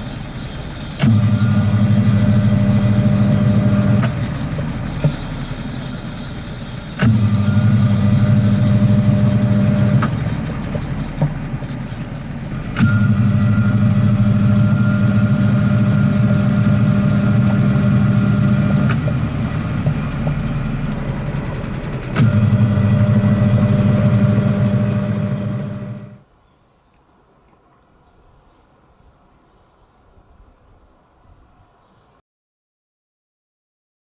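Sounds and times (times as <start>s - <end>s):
washing machine motor humming: 0.0s - 26.2s.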